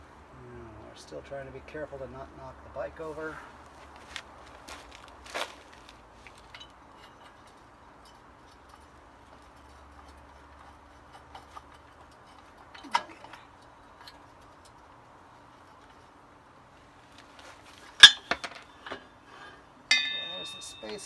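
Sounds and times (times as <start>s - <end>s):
metallic clicks and clinks: 18.0s - 19.0s, 19.9s - 21.0s.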